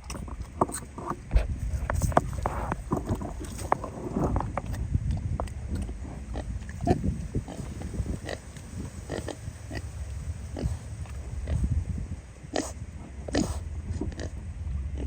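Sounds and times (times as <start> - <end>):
pigs drinking at waterer: 0.0 - 9.8
low rumble: 0.0 - 15.0
pigs grunting: 2.0 - 11.8, 12.4 - 15.0.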